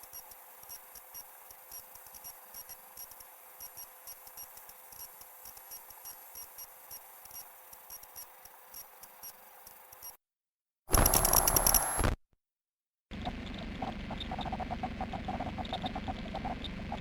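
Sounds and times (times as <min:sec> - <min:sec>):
sharp electronic clicks: 0:10.9 - 0:12.2.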